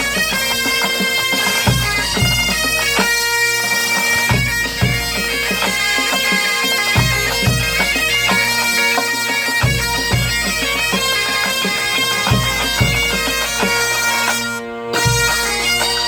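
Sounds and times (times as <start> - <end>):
bagpipes playing melody with drones: 0.0 - 16.0
bass drum beats: 1.7 - 3.0, 7.0 - 8.6, 9.6 - 11.2, 12.3 - 13.9.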